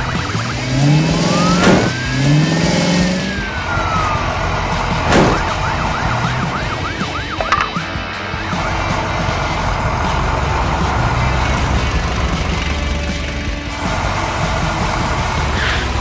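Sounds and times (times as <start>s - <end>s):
engine revving: 0.0s - 7.4s, 8.6s - 16.0s
sharp hits: 1.1s - 3.5s, 5.0s - 8.0s.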